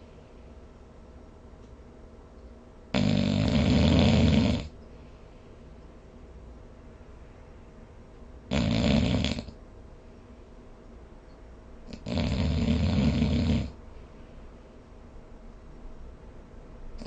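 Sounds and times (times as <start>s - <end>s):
person snoring: 3.0s - 4.8s, 8.5s - 9.6s, 11.9s - 13.8s.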